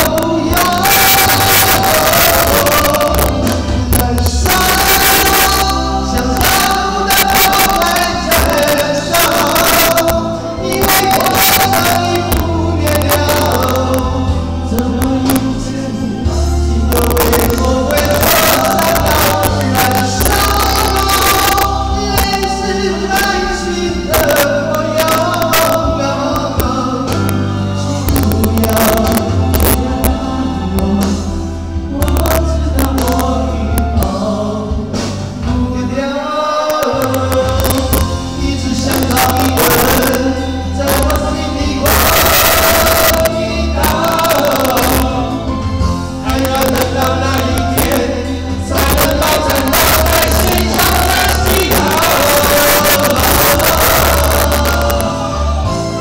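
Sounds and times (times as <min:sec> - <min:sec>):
backing music: 0:00.0 - 0:56.0
man singing: 0:00.0 - 0:56.0.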